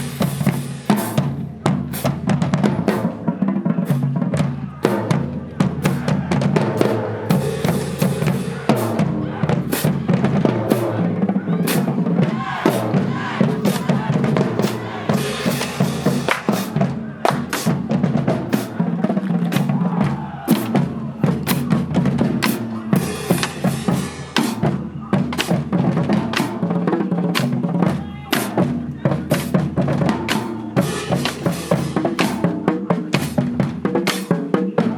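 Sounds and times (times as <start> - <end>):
bass drums: 0.0 - 3.3, 3.9 - 26.6, 27.3 - 34.9
marching drumline playing: 0.0 - 34.9
snare drums: 0.0 - 34.9.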